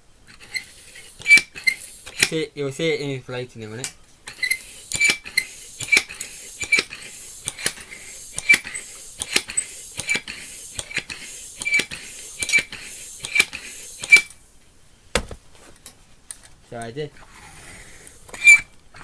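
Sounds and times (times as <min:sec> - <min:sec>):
hand pump strokes: 0:00.3 - 0:02.4, 0:04.3 - 0:14.3, 0:17.2 - 0:19.0
air hissing: 0:04.4 - 0:14.5.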